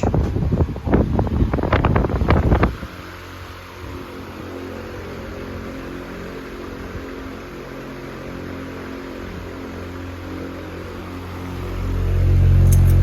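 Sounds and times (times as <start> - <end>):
fan air rushing: 0.0 - 13.0
fan motor hum: 0.0 - 13.0.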